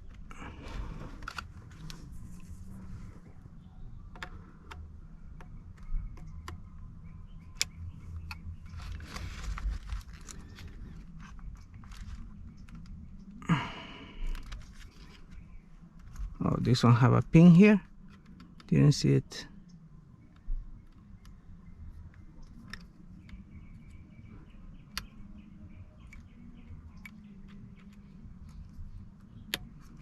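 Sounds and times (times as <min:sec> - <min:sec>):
small plastic clicks: 0:04.1 - 0:13.4, 0:19.7 - 0:30.0.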